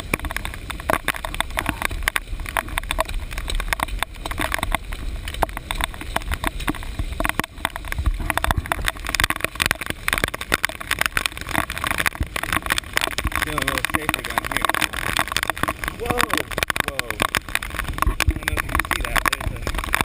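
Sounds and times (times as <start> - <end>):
camera rattling in case: 0.0 - 20.0
wind rumble on camera case: 0.0 - 20.0.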